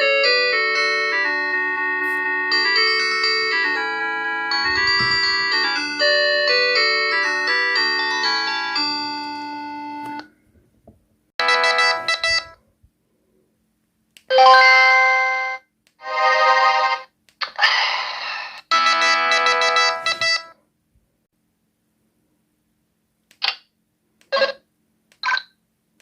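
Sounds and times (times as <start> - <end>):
mobile phone electronic melody: 0.0 - 10.3, 11.4 - 12.6, 18.7 - 20.6.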